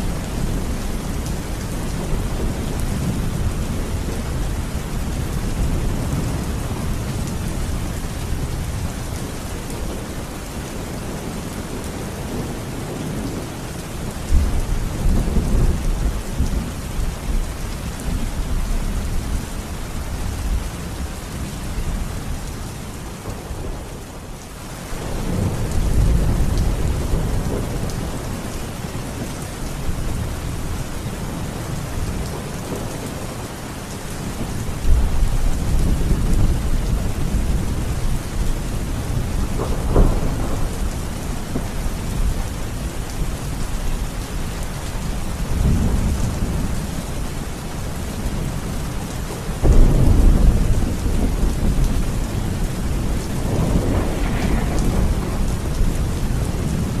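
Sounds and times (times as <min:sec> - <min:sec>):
heavy rain: 0:00.0 - 0:57.0
rolling thunder: 0:34.4 - 0:44.0, 0:49.5 - 0:57.0
loud thunder crack: 0:39.5 - 0:40.9, 0:49.6 - 0:51.9, 0:52.9 - 0:57.0.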